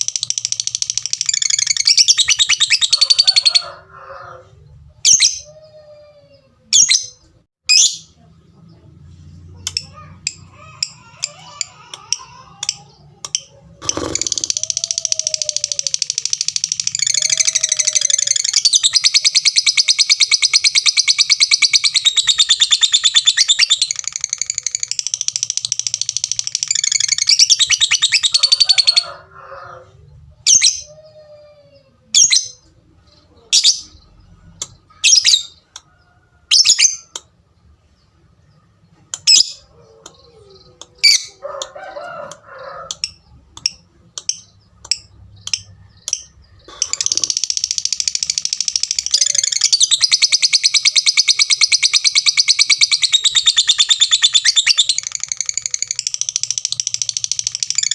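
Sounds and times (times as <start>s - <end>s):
lovebird chattering: 0.0s - 3.7s, 9.6s - 29.1s, 42.8s - 57.9s
bird sharp chirps: 43.0s - 57.9s.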